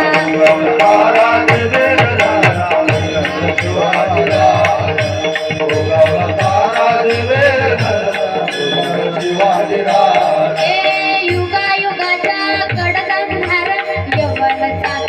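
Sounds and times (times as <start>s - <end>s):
hand drum beat: 0.0s - 8.5s.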